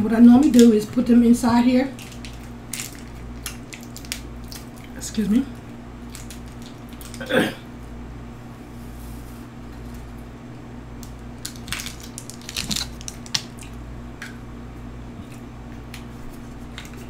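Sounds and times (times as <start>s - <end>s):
plastic packet crinkling: 2.0s - 5.4s, 6.0s - 7.3s, 11.0s - 13.8s.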